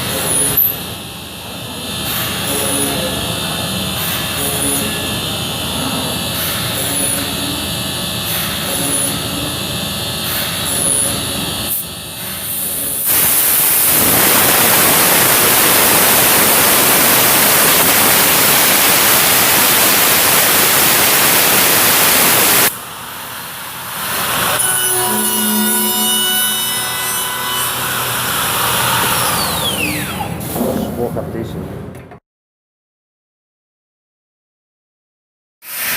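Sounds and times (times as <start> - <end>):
machine humming and whining: 0.0 - 31.9
loud even hiss: 12.3 - 22.7.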